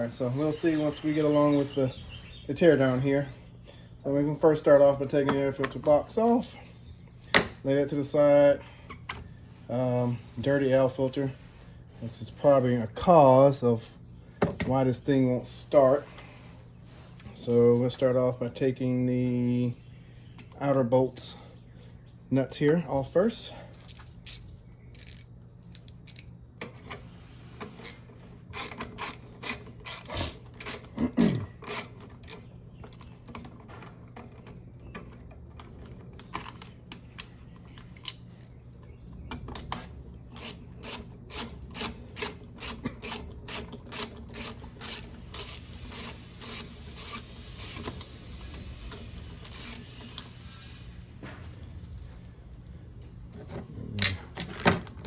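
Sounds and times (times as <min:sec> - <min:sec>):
socket ratchet clicking: 0:23.8 - 0:26.4, 0:40.4 - 0:48.1, 0:49.4 - 0:49.9.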